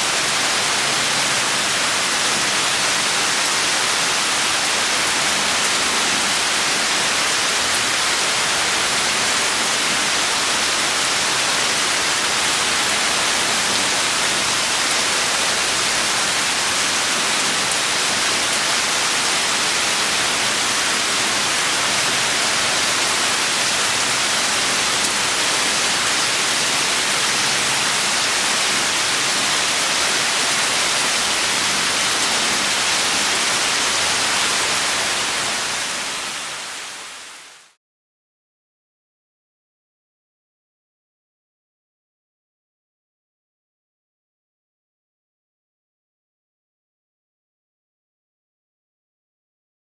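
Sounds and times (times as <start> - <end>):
steady dense rain: 0.0 - 37.8.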